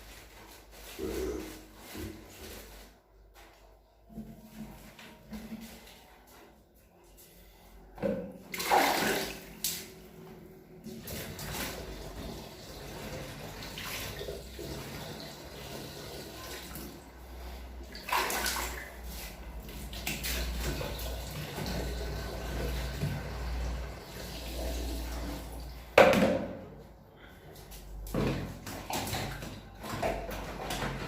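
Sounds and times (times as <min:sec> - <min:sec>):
water splashing into container: 0:08.5 - 0:10.0, 0:17.9 - 0:19.0.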